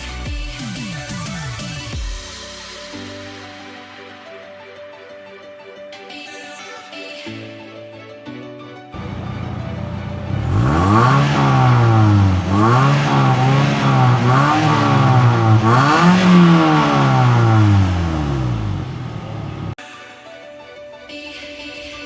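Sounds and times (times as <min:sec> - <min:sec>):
car engine revving: 0:09.0 - 0:19.8.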